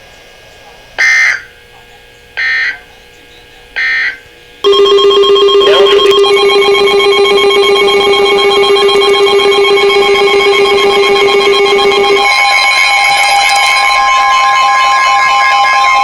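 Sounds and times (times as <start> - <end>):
electronic alarm tone: 2.4 - 2.8, 3.8 - 16.0.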